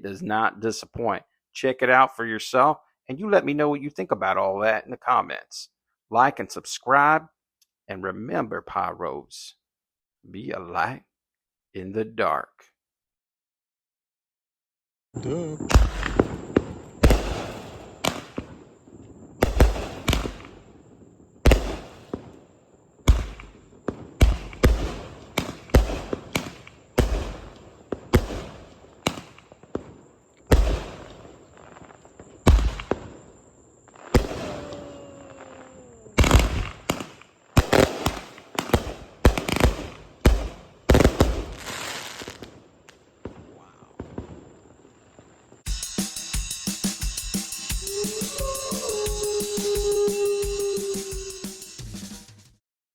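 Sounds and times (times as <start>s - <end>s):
firework bangs: 15.2s - 42.6s, 43.2s - 44.8s
firework crackling: 15.2s - 42.6s, 47.5s - 51.8s.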